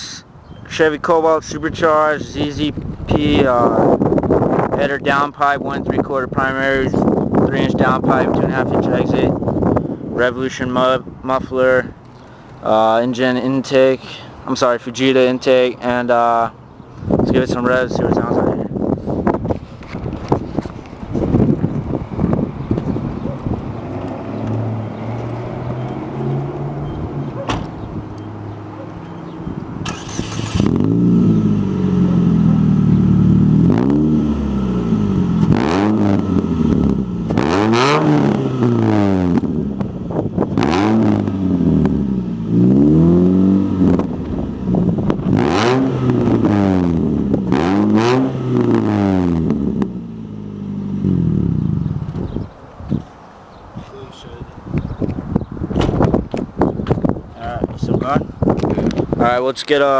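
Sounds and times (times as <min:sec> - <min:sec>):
car engine idling and revving: 0:19.2 - 0:52.4.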